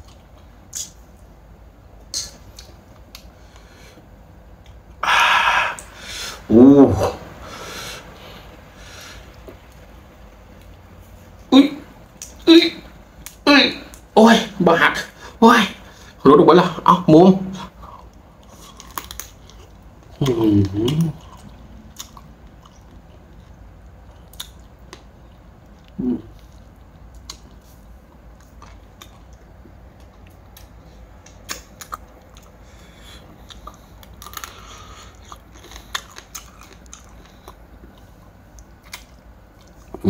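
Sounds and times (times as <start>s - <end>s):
person chewing and crunching: 0.0s - 1.2s, 17.7s - 40.0s
person humming mm: 5.0s - 7.2s, 26.0s - 26.3s.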